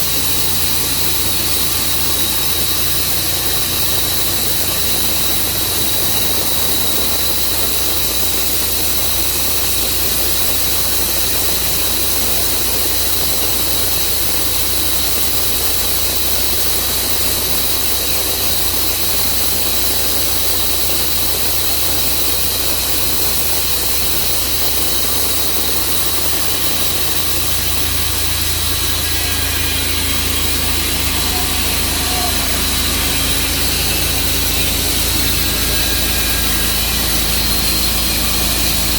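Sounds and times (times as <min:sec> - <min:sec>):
sawmill engine running: 0:00.0 - 0:38.9
deep hum: 0:21.7 - 0:38.9.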